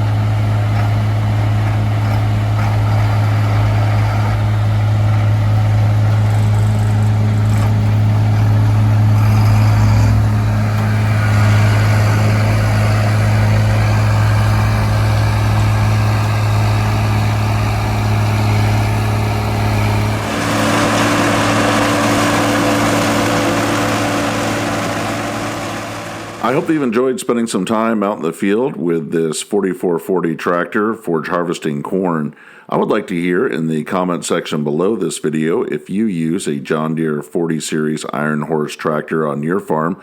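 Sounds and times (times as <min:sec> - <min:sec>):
tractor diesel engine droning: 0:00.0 - 0:27.1
brighter noisier machine mix: 0:10.2 - 0:27.0.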